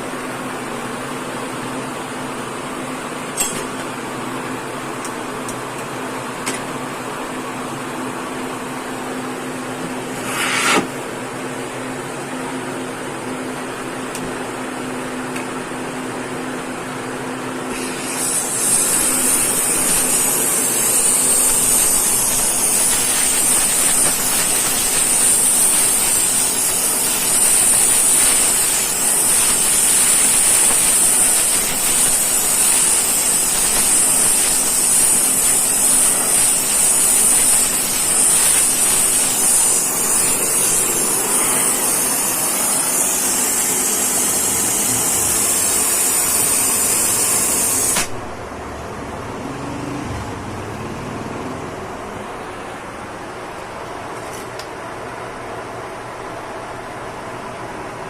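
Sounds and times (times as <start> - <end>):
machine hum: 15.6 - 47.0
loud steady hissing: 17.7 - 48.2.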